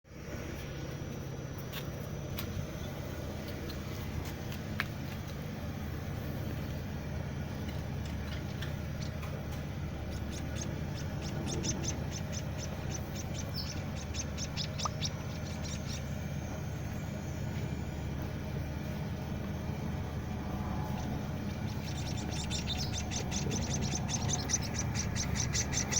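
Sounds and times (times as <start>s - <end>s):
steady low hum: 0.1s - 25.9s
chick begging chirps: 10.0s - 16.2s, 20.9s - 25.9s.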